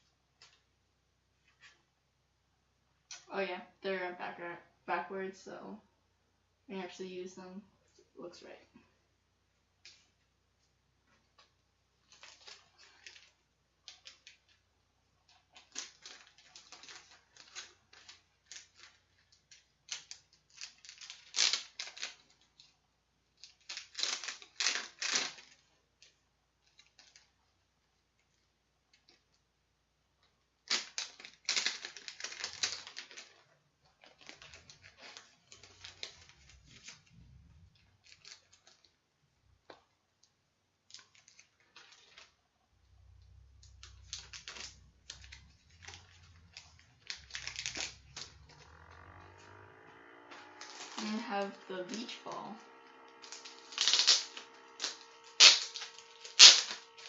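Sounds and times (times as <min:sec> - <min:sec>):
packaging rustling and crinkling: 0:12.0 - 0:14.6, 0:15.2 - 0:22.7, 0:23.4 - 0:25.7, 0:30.6 - 0:39.0, 0:40.8 - 0:42.4, 0:43.0 - 0:57.0.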